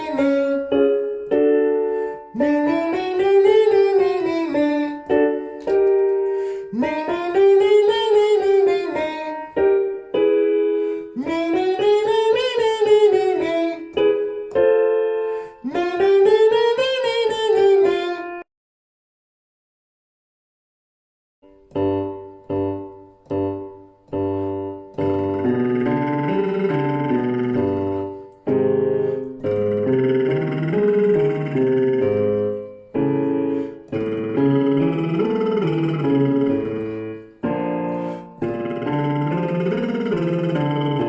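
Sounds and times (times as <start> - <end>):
piano chords: 0.0 - 18.4, 21.4 - 41.0
person singing vocal glides: 25.1 - 28.2, 29.4 - 32.6, 34.0 - 37.0, 38.4 - 41.0.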